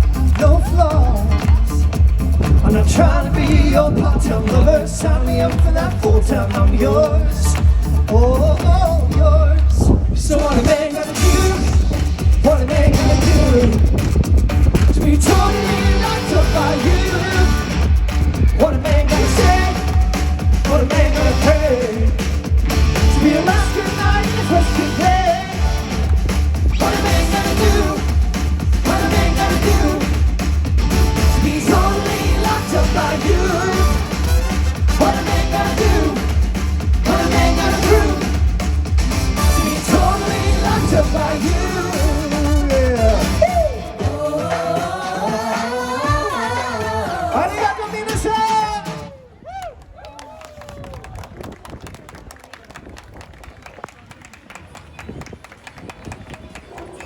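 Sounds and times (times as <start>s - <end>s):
heavy beat: 0.0s - 49.0s
pop song with singer: 0.0s - 49.7s.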